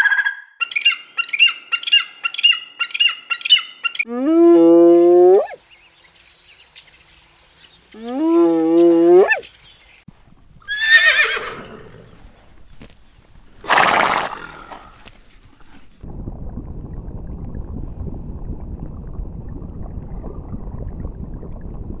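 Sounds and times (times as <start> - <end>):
horse whinnying: 10.7 - 12.0, 13.7 - 15.0
loud breathy blast: 13.7 - 15.0
low rumbling noise: 16.1 - 22.0.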